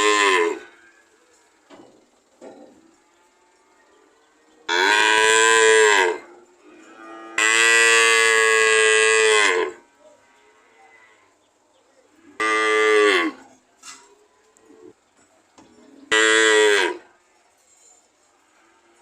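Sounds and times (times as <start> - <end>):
cow mooing: 0.0 - 1.1, 4.7 - 11.4, 12.2 - 13.6, 16.1 - 17.1.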